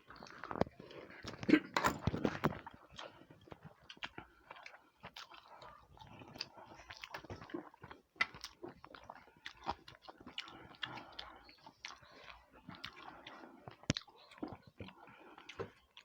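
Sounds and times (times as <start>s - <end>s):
people chewing food: 0.0s - 16.0s.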